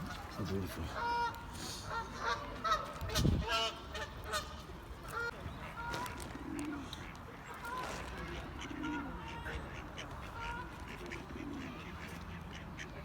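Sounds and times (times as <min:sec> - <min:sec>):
geese honking: 0:00.0 - 0:06.2.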